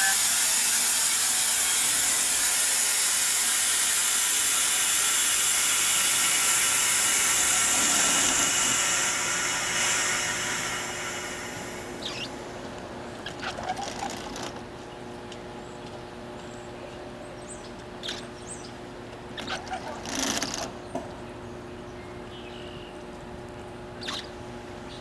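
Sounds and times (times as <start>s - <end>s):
diesel train engine humming: 0.0s - 13.4s
air hiss: 0.0s - 13.6s.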